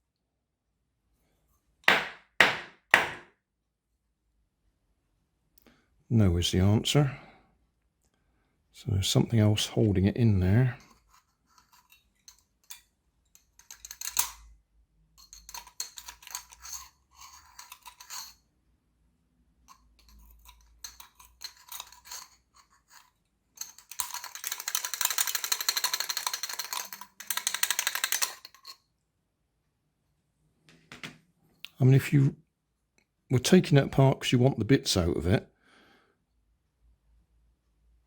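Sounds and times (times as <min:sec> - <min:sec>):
small tool scraping and clicking: 0:10.8 - 0:14.5, 0:15.2 - 0:18.4, 0:19.7 - 0:28.9.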